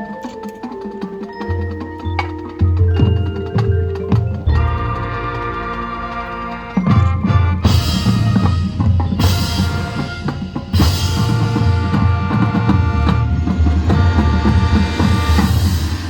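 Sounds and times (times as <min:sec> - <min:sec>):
brass chords: 0:04.1 - 0:16.0
heavy drum hits: 0:06.9 - 0:16.0.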